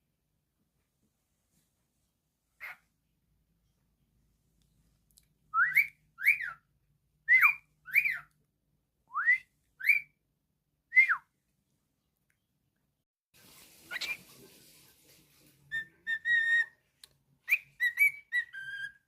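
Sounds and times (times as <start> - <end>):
cockatiel whistling: 5.6 - 6.6, 7.3 - 8.3, 9.1 - 10.1, 15.7 - 16.8, 17.5 - 19.0.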